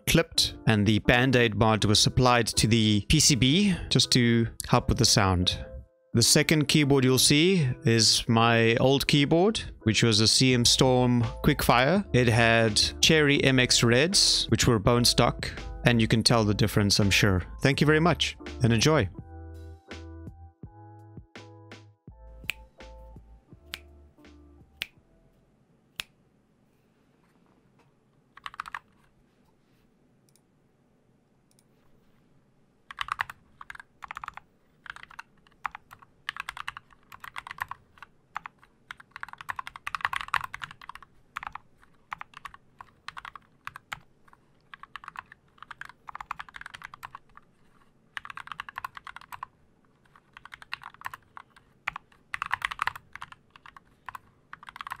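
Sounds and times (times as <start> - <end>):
typing on mechanical keyboard: 28.4 - 29.0, 32.9 - 55.0.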